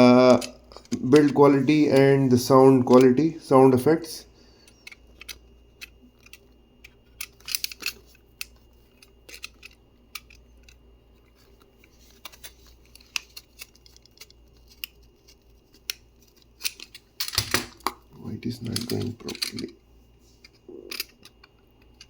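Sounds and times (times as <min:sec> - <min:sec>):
packaging clicks and rustles: 0:04.7 - 0:19.7.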